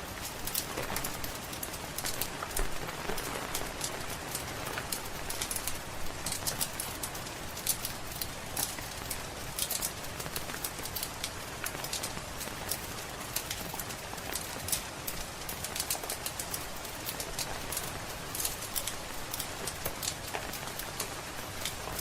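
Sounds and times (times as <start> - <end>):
fireplace crackling and popping: 0.1 - 22.0.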